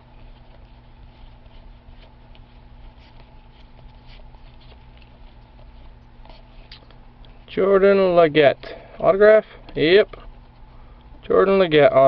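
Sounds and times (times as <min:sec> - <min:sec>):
cards ticking and rustling: 0:00.0 - 0:07.6
low steady hum: 0:00.0 - 0:12.0.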